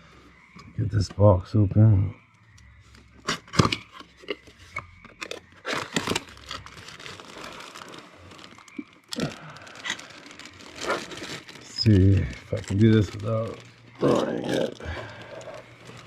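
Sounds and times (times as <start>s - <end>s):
packaging tearing and rustling: 3.2s - 16.0s.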